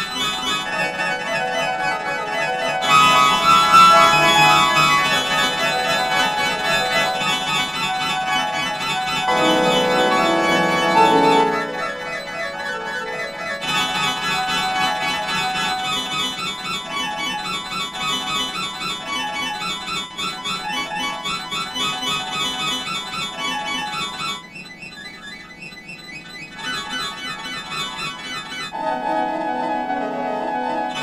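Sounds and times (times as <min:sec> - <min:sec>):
pitch-shifted organ-like chord: 0:00.8 - 0:15.2.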